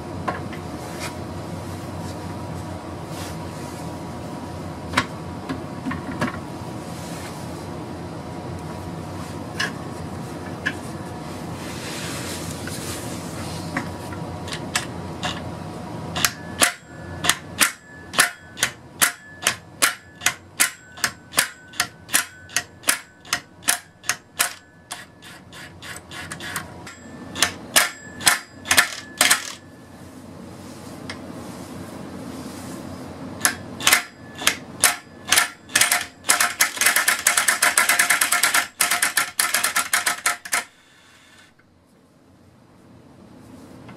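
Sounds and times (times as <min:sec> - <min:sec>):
faint hum: 0:00.0 - 0:37.6, 0:38.3 - 0:43.9
sharp metallic clicks: 0:33.4 - 0:40.7.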